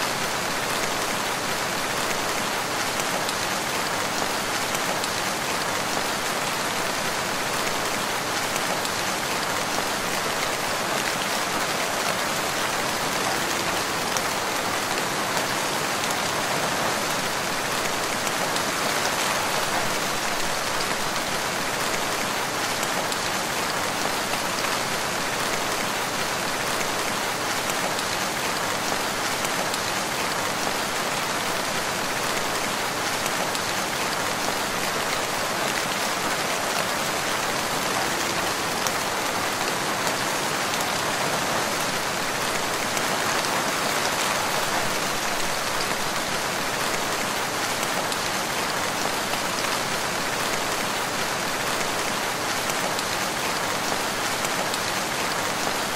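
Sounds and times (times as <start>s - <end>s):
steady rain falling: 0.0s - 55.9s.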